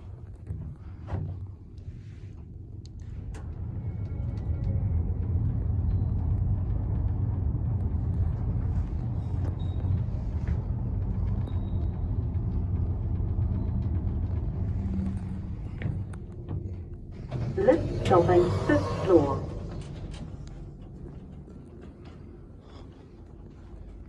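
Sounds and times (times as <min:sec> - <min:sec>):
faint hum: 0:00.0 - 0:24.0
lift car rumbling: 0:17.2 - 0:22.8.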